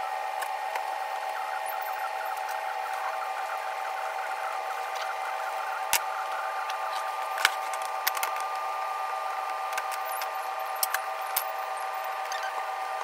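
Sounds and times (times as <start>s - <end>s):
power tool humming: 0.0s - 13.0s.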